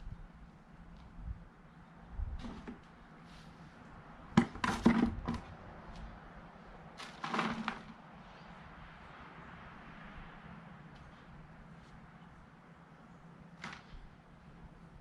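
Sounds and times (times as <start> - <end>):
digging in garden soil: 2.4 - 3.8, 6.9 - 8.0.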